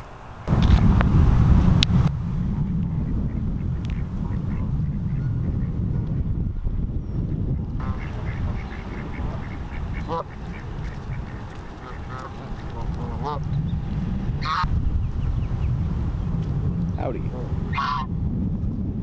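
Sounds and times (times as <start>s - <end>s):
low rumble: 0.5s - 19.0s
geese honking: 3.0s - 6.3s, 7.8s - 14.7s, 17.7s - 18.1s.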